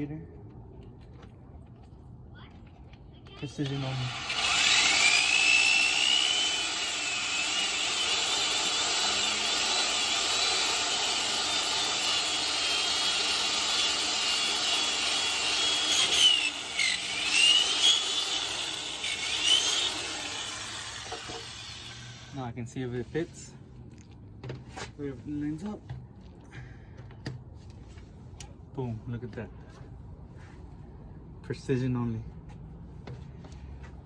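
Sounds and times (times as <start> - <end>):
power drill whining: 3.5 - 22.4.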